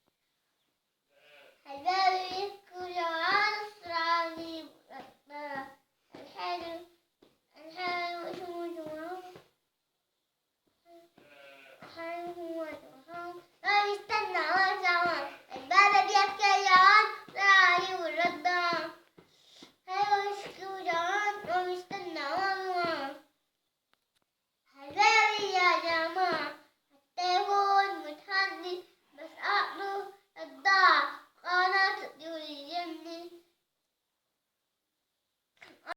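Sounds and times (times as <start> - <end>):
child singing: 1.7 - 6.9, 7.6 - 9.4, 11.8 - 19.0, 19.9 - 23.2, 24.8 - 26.6, 27.2 - 33.4.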